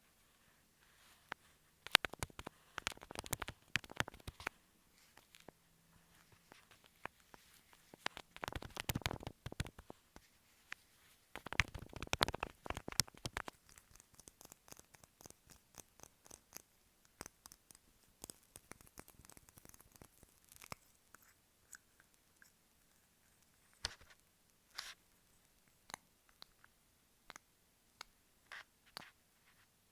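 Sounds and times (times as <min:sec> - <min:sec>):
sticky tape crackling: 0:01.9 - 0:04.6, 0:06.4 - 0:10.0, 0:11.4 - 0:21.3.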